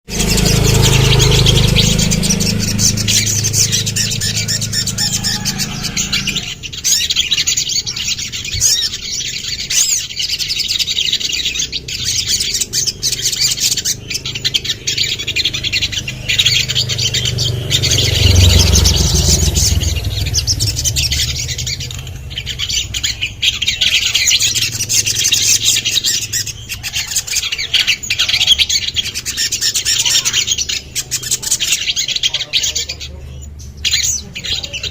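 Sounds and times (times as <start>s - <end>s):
sunbird singing in high chirps: 0.1s - 34.9s
low rumble: 11.4s - 26.8s.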